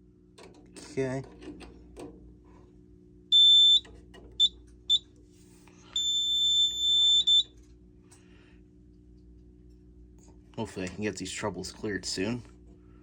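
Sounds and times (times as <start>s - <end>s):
fire alarm electronic beeps: 3.3s - 5.1s, 6.0s - 7.6s.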